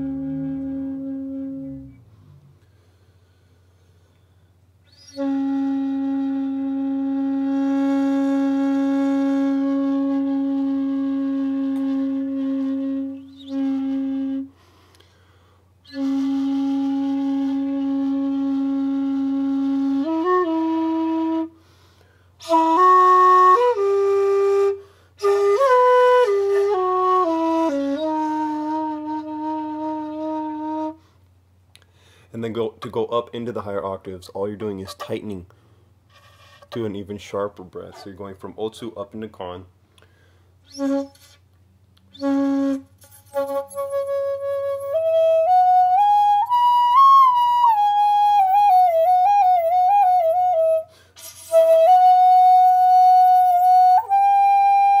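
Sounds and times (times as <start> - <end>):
low bamboo flute notes: 0.0 - 2.8, 4.8 - 14.6, 15.8 - 21.6, 22.4 - 31.0, 40.6 - 55.0.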